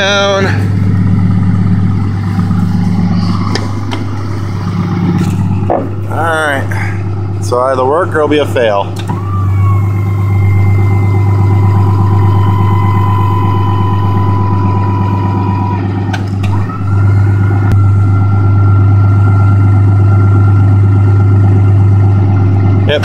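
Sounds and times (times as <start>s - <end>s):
diesel engine idling: 0.0s - 23.0s
hydraulic pump motor whining: 0.0s - 23.0s.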